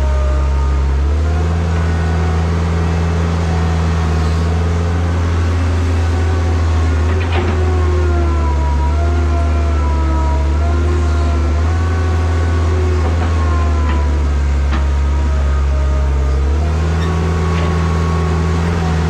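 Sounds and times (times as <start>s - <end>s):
heavy diesel engine running: 0.0s - 19.0s.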